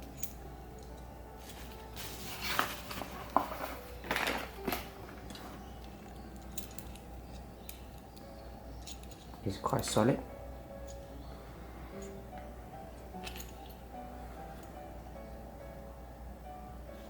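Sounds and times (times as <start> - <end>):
faint low hum: 0.0 - 17.0
rustling: 1.3 - 7.0.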